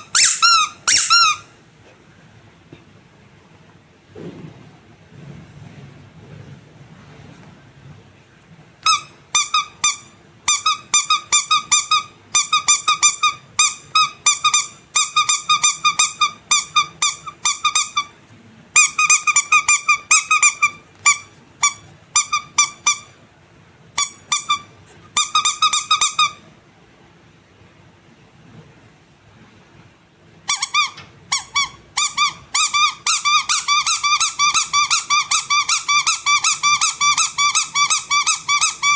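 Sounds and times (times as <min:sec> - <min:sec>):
rubber squeaky toy squeaking: 0:00.0 - 0:01.5, 0:08.8 - 0:18.2, 0:18.8 - 0:23.2, 0:24.0 - 0:26.4, 0:30.5 - 0:38.9.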